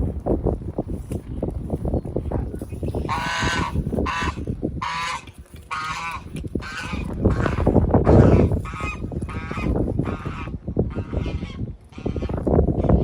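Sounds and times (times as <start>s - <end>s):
geese honking: 3.0s - 12.3s.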